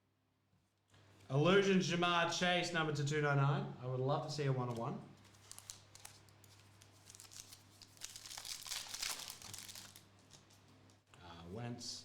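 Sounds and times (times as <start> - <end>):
cards rustling: 4.7 - 11.0
foil wrapper crinkling and tearing: 5.2 - 11.0.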